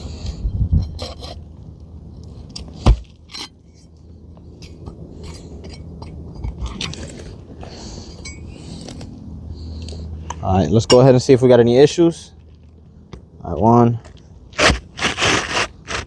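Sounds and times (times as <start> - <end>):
steady low rumble: 0.0 - 14.5
scraping on roof shingles: 14.6 - 16.0.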